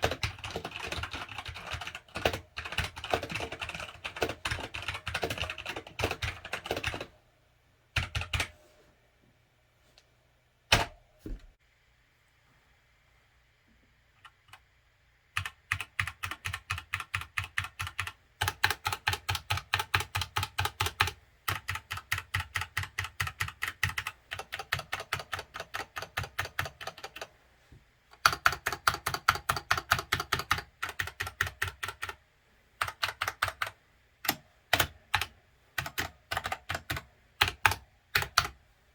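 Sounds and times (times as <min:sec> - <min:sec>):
mechanical keyboard typing: 0:00.0 - 0:07.1, 0:08.0 - 0:08.5, 0:15.3 - 0:27.3, 0:28.2 - 0:32.2, 0:32.8 - 0:38.6.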